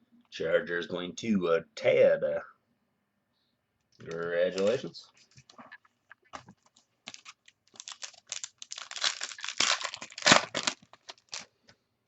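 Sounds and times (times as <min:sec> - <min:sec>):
foil wrapper tearing and crinkling: 0:07.0 - 0:11.5.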